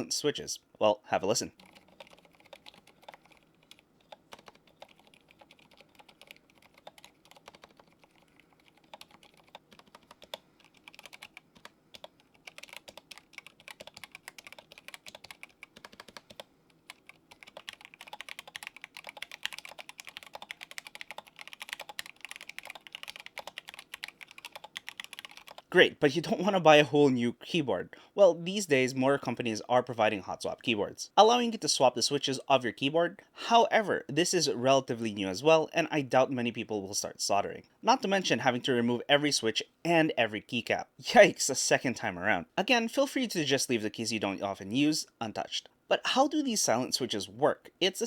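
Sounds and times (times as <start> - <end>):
muted mechanical keyboard typing: 1.6 - 25.7.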